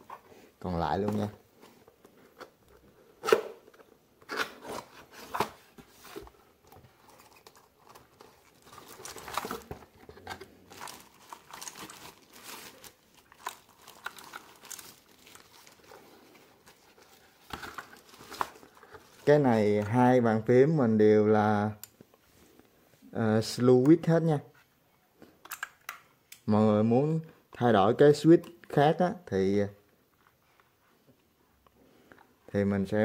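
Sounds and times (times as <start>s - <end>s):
packaging crinkling: 6.9s - 19.4s.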